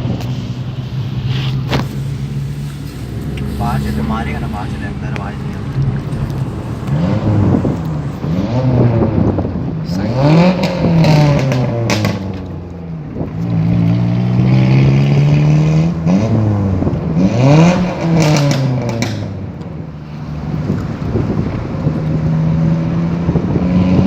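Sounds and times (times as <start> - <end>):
exhaust pops and crackles: 0.0 - 14.5, 16.8 - 19.9
loud car exhaust revving: 0.0 - 24.0.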